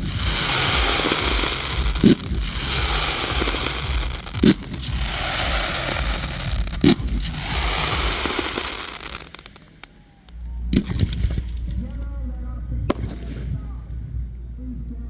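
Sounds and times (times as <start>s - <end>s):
loud firework bangs: 0.0s - 9.9s
fireworks crackling: 0.0s - 10.0s.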